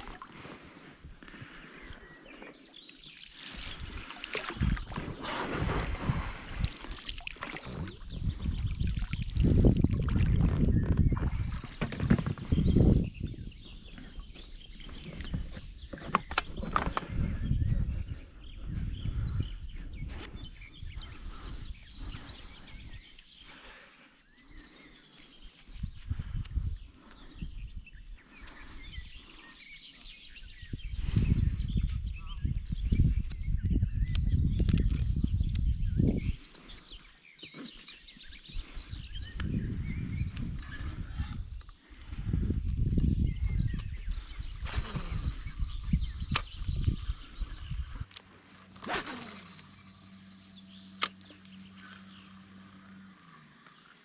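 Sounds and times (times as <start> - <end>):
songbirds chirping and singing: 0.3 - 5.2, 7.5 - 54.0
water sloshing around boat: 2.4 - 8.0
deep uneven outdoor rumble: 3.6 - 29.4.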